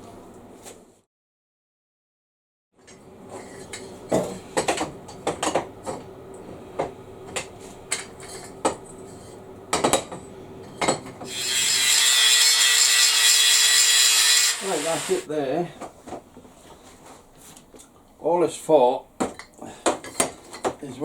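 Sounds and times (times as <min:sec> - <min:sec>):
power tool hissing: 0:11.3 - 0:15.3.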